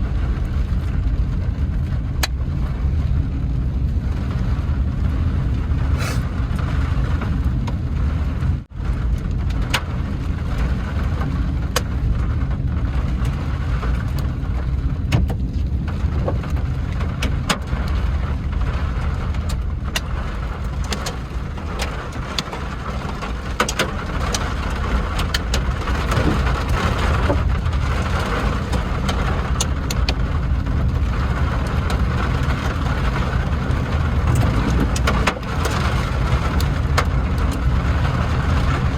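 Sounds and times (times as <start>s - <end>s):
car engine and tyres on wet road: 0.0s - 38.9s
rain hiss: 5.9s - 6.7s.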